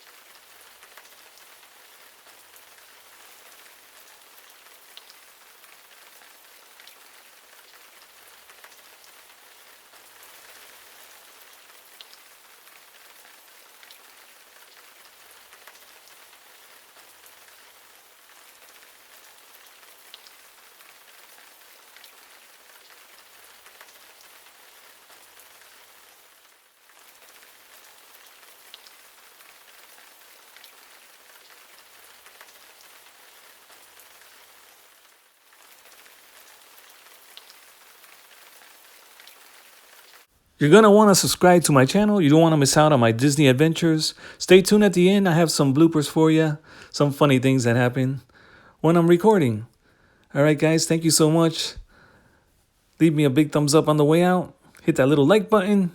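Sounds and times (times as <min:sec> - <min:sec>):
falling water hissing: 0:39.1 - 0:49.6.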